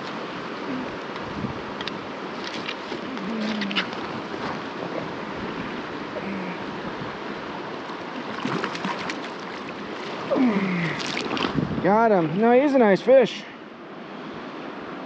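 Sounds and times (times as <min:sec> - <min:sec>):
river water flowing over rocks: 0:00.0 - 0:15.0
sharp splashes: 0:08.2 - 0:11.6.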